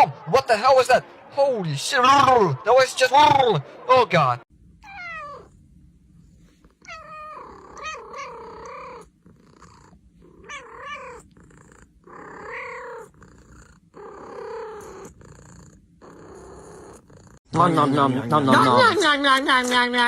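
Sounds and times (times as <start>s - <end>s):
cat meowing: 4.8s - 5.5s, 6.8s - 9.1s, 10.3s - 11.3s, 12.2s - 13.1s.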